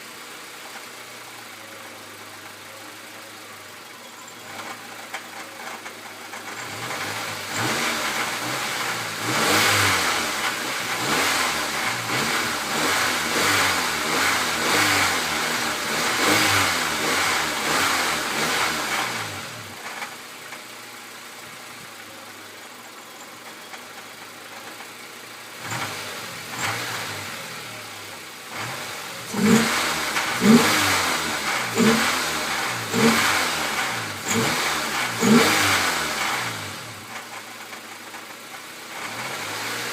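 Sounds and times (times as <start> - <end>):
car engine revving and idling: 0.0 - 39.9
engine knocking rattle: 36.4 - 38.9.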